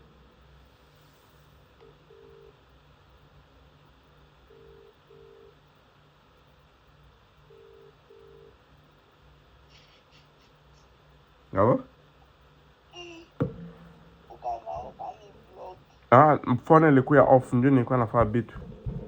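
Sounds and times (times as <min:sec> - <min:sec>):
phone ringing double ring: 0:04.5 - 0:05.5, 0:07.5 - 0:08.5.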